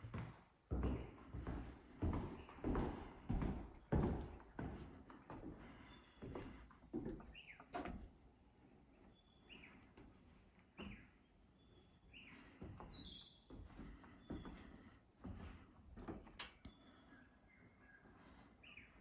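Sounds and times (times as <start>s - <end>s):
faint birds calling: 5.4s - 7.8s, 8.6s - 19.0s.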